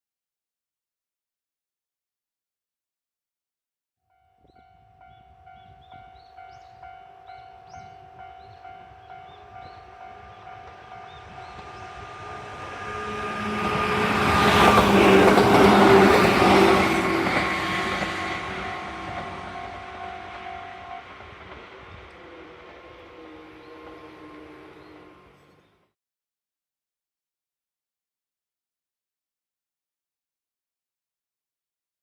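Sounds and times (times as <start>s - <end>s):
level crossing warning bell: 4.1s - 14.3s, 18.1s - 21.3s
electric train passing: 4.4s - 25.9s.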